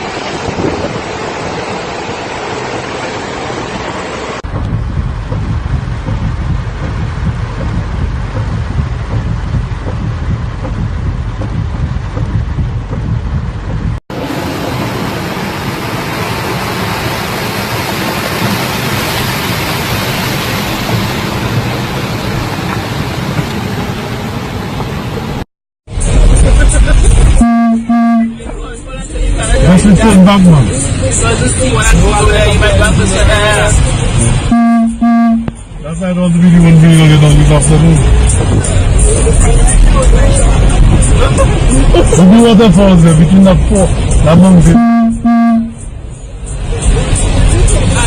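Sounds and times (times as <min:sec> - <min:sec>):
hurricane wind: 0:00.0 - 0:27.5, 0:35.6 - 0:45.3
driving rain: 0:00.0 - 0:48.0
wind buffeting on microphone: 0:00.3 - 0:02.2.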